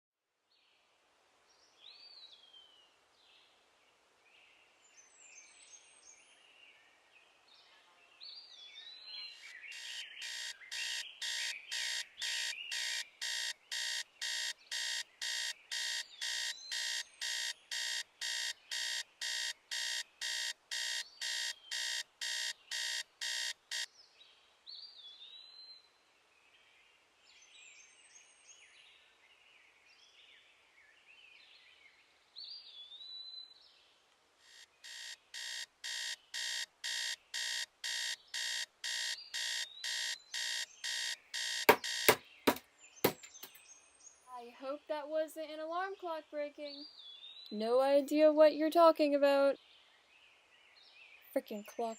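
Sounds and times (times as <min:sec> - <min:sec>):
birds chirping: 0:08.9 - 0:23.8, 0:35.2 - 0:43.6
digital alarm clock beeping: 0:09.3 - 0:23.9, 0:34.5 - 0:43.6.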